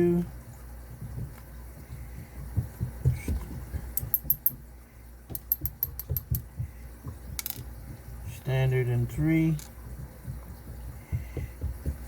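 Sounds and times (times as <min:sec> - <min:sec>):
soft knocks: 0:09.9 - 0:12.0.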